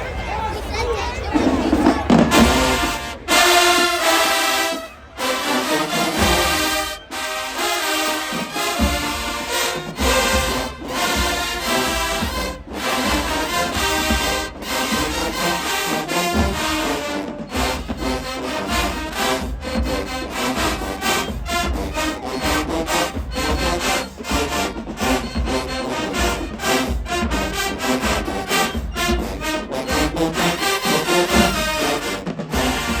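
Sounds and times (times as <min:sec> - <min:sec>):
marching band playing: 0:00.0 - 0:33.0
bass drums beating: 0:16.3 - 0:31.9.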